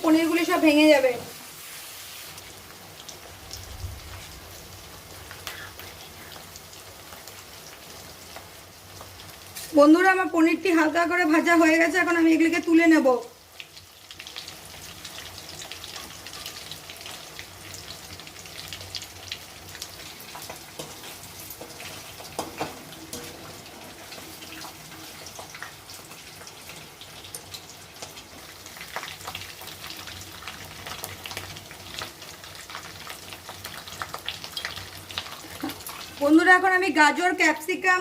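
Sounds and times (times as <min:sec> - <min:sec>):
cheese sizzling in hot oil: 0:00.0 - 0:38.0.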